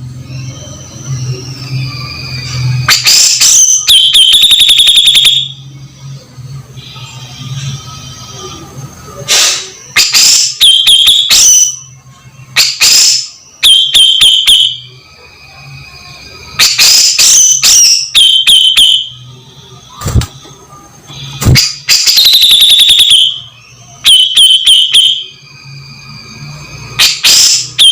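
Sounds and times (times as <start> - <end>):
bird giving harsh shrill calls: 9.3 - 11.8.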